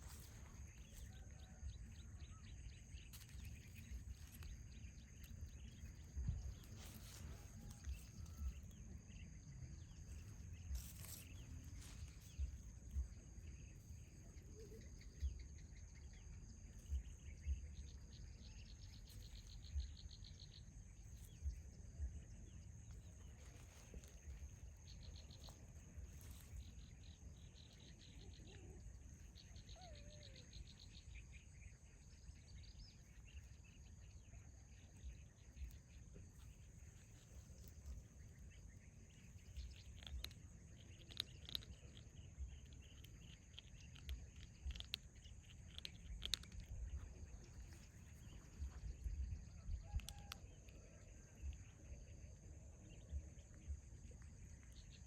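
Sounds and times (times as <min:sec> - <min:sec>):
bird-like chirps: 0:00.0 - 0:55.0
insects droning: 0:00.0 - 0:55.0.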